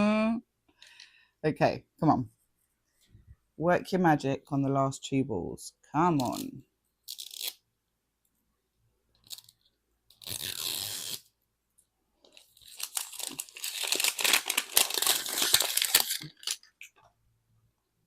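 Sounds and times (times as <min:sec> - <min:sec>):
plastic wrapping tearing: 0:07.1 - 0:07.6, 0:09.2 - 0:11.3, 0:12.3 - 0:16.9.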